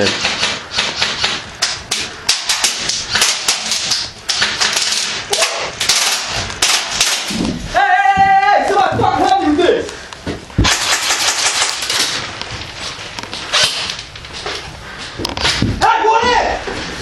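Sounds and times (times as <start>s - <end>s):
airsoft guns firing bursts: 0.0s - 7.4s, 10.6s - 12.2s.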